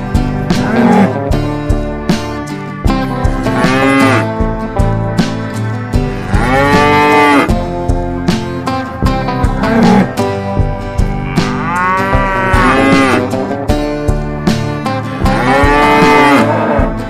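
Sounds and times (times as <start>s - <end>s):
guitar music: 0.0s - 17.0s
cow mooing: 6.2s - 7.6s, 9.6s - 10.3s, 11.0s - 13.5s, 15.2s - 17.0s.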